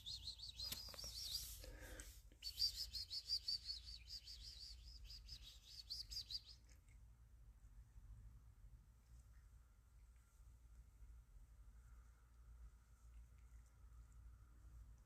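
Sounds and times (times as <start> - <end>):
bird chirping: 0.0 - 1.7, 2.4 - 6.9.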